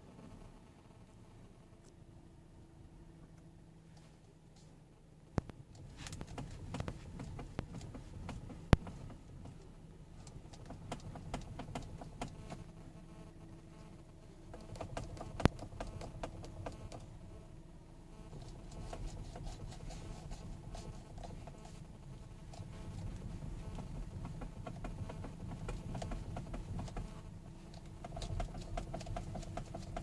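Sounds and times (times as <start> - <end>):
steering clicking and knocking: 5.4 - 12.8, 14.4 - 17.2, 18.3 - 30.0.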